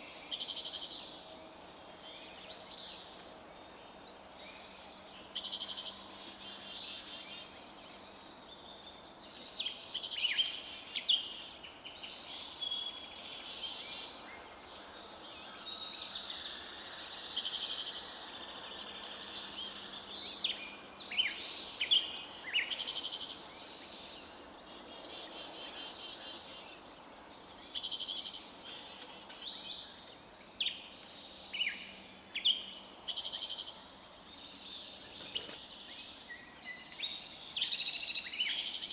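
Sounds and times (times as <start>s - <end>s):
songbirds singing and calling: 0.0s - 38.9s.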